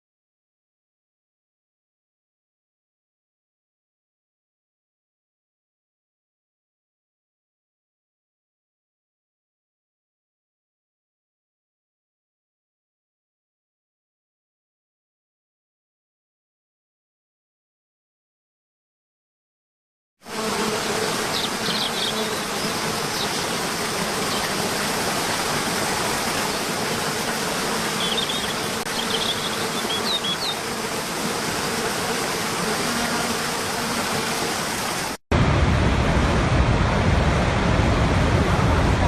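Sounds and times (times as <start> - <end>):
deep water rushing: 20.8 - 28.9, 33.6 - 39.0
high bird chirps: 21.3 - 23.5, 28.0 - 30.6.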